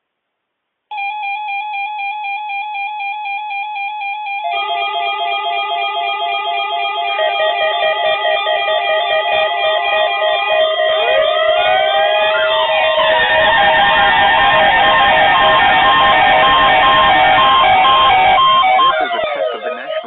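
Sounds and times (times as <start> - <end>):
lower alarm tone: 0.9 - 20.0
rapidly pulsing beep: 5.6 - 20.0.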